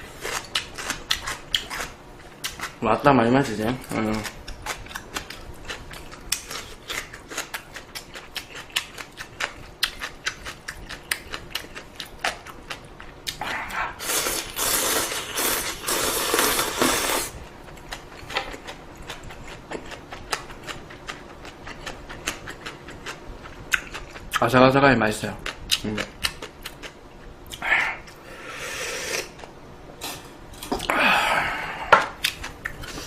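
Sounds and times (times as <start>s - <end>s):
crunchy food chewing: 3.4s - 13.4s
loud slurp: 14.0s - 17.3s.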